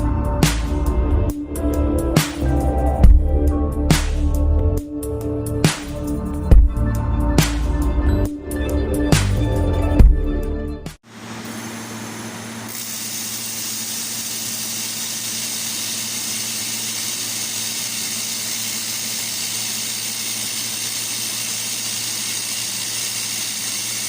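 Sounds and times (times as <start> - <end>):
laser welding machine hissing: 11.1 - 24.0.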